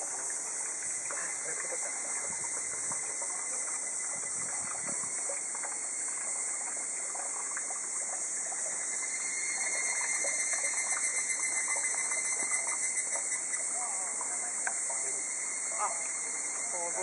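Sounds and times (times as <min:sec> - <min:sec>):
cicada shrilling: 0:08.7 - 0:17.0.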